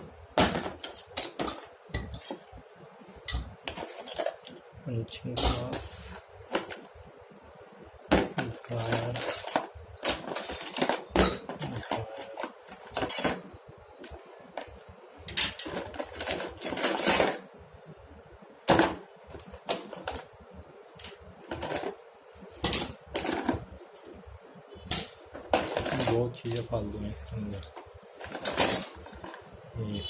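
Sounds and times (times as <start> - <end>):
metal tools clinking and clattering: 0.4 - 2.5, 3.2 - 4.6, 5.3 - 7.1, 8.1 - 17.5, 18.7 - 20.3, 21.0 - 24.2, 24.8 - 29.6
rummaging in tool bag: 8.1 - 17.5, 21.0 - 24.1, 25.3 - 26.7, 27.4 - 29.5.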